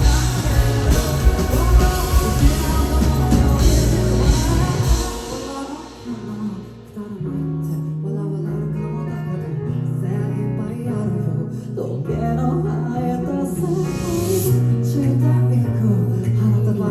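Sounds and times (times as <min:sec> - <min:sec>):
live rock band playing: 0:00.0 - 0:07.2
guitar playing: 0:00.0 - 0:07.3
steady held notes: 0:00.0 - 0:07.4.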